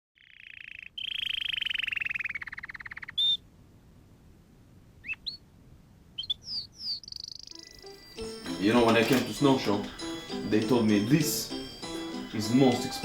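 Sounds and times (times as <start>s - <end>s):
songbird buzzy trill: 6.2s - 13.0s.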